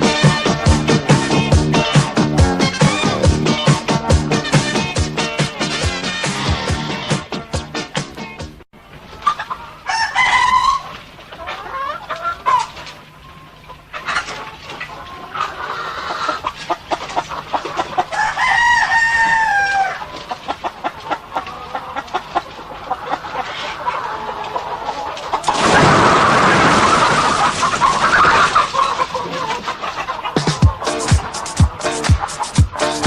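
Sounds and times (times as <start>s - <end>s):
chickens clucking: 0.0s - 33.0s
rooster crowing: 9.8s - 10.8s, 18.1s - 20.1s.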